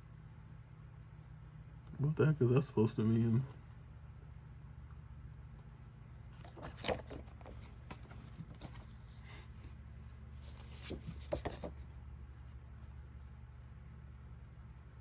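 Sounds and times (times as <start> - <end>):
steady low hum: 0.0 - 15.0
paper rustling: 6.4 - 9.8, 10.4 - 11.9.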